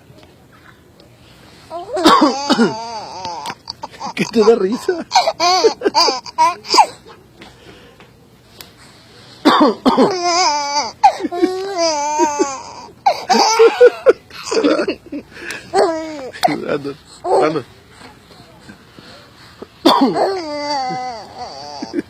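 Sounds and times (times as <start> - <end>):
man coughing: 2.0 - 2.9, 9.4 - 10.2, 13.1 - 15.0, 19.8 - 20.4
baby laughing: 2.0 - 7.0, 10.1 - 14.9, 20.1 - 22.0.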